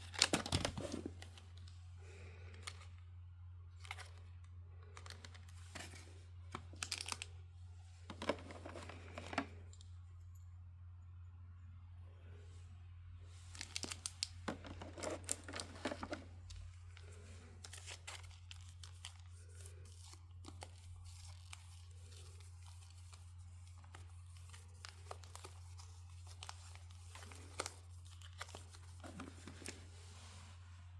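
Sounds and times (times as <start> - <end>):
packaging tearing and crinkling: 4.8 - 7.3, 13.5 - 16.2, 17.0 - 29.8.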